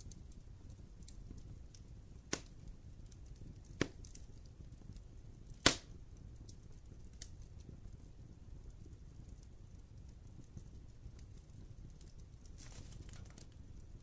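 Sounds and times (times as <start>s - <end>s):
sharp fire pops: 0.0s - 7.8s, 8.8s - 14.0s
low fire rumble: 0.0s - 14.0s
wood fire crackling: 0.0s - 14.0s.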